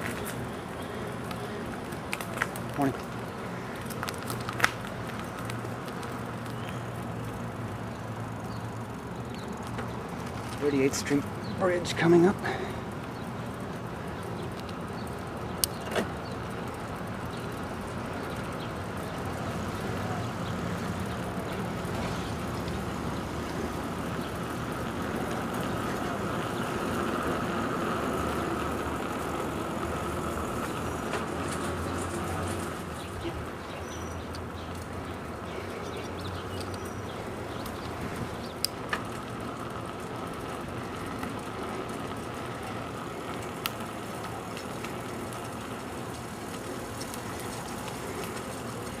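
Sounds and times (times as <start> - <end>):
passing cars rushing: 17.5 - 49.0.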